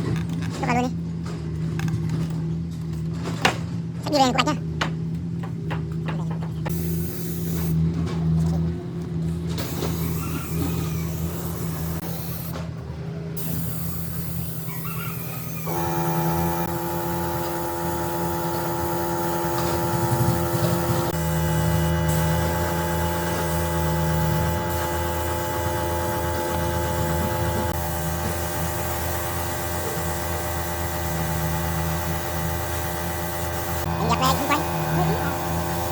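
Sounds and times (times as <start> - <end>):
electric motor humming: 9.6 - 12.6, 13.4 - 35.9.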